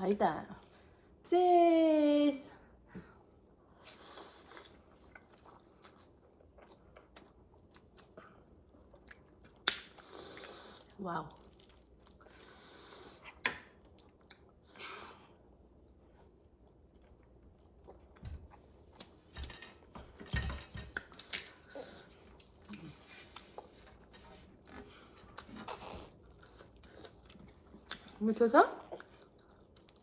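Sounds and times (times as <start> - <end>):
noodles being chewed: 4.1 - 10.6, 11.3 - 19.2, 28.8 - 30.0.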